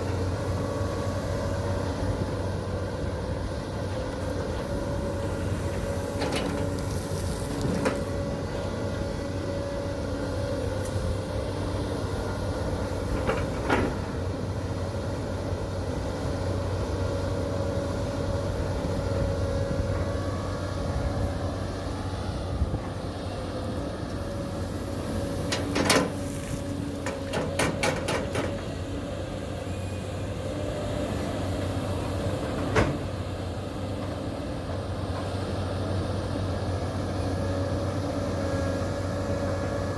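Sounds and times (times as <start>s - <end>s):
metallic clanks of excavator bucket: 25.4s - 26.4s, 27.0s - 28.7s.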